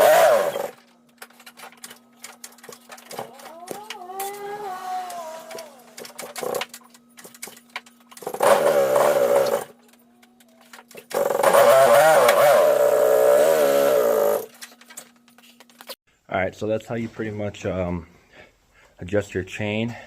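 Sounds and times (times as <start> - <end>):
quad engine revving: 0.0 - 0.7, 8.3 - 9.7, 11.1 - 14.5.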